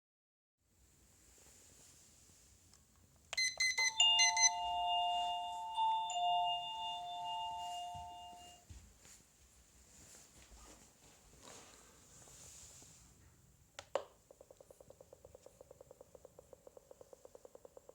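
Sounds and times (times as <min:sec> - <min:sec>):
doorbell chime ding-dong: 0:03.4 - 0:08.7.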